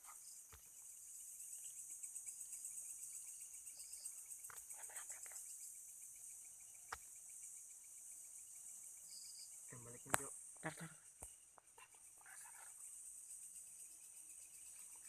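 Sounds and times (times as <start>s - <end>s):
insects trilling: 0.0s - 15.0s
sharp click: 10.1s - 10.3s.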